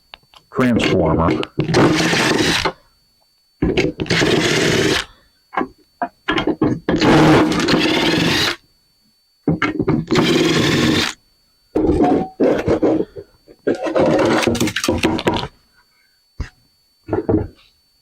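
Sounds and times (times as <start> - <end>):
power tool motor running: 1.6 - 2.7, 3.7 - 5.1, 6.9 - 8.6, 9.8 - 11.2
clicks and rattles of parts: 13.6 - 15.5.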